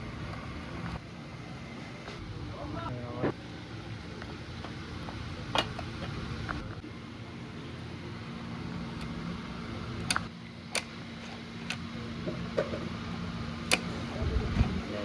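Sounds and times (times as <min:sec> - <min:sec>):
steady low hum: 0:00.0 - 0:15.0
sharp clicks: 0:10.0 - 0:11.0, 0:13.7 - 0:14.0.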